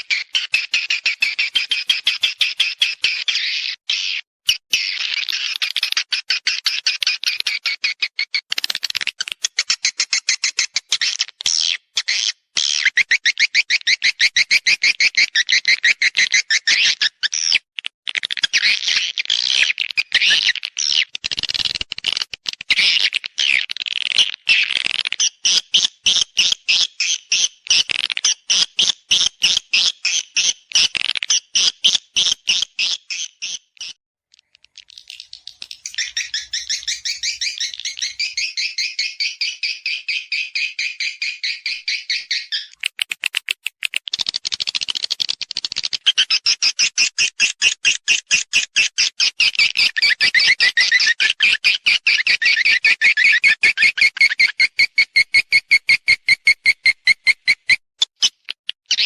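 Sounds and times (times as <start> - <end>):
swiftlet chirping and twittering: 34.6 - 43.5.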